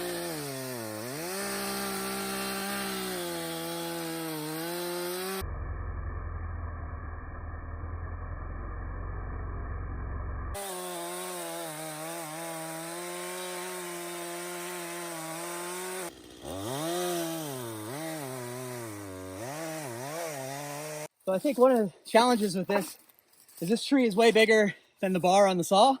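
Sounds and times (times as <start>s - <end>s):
chainsaw cutting wood: 0.0s - 5.4s, 10.5s - 21.2s.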